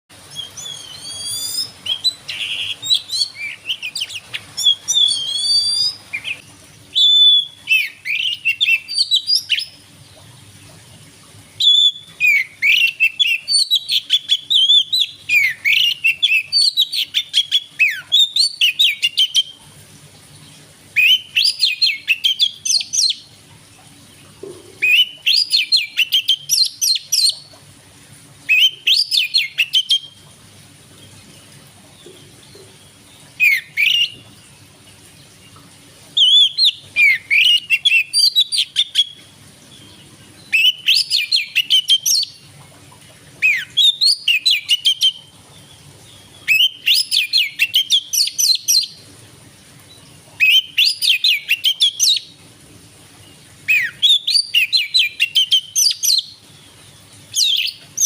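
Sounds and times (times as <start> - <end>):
bird singing whistles and chirps: 0.3 - 9.8, 11.6 - 19.5, 28.5 - 30.2, 33.4 - 34.2, 36.2 - 39.2, 40.4 - 42.4, 46.2 - 49.0, 50.4 - 52.3, 53.7 - 56.4, 57.4 - 57.8.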